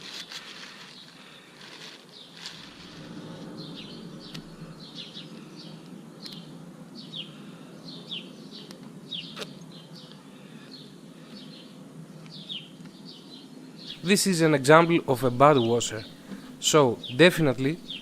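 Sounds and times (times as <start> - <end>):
bird chirping: 2.2 - 10.1, 12.3 - 18.0.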